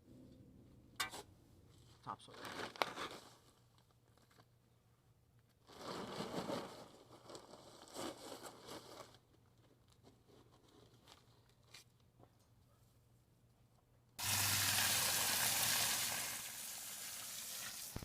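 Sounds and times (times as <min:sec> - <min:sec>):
soil pouring from plastic bag: 0:05.7 - 0:09.2, 0:14.2 - 0:18.0.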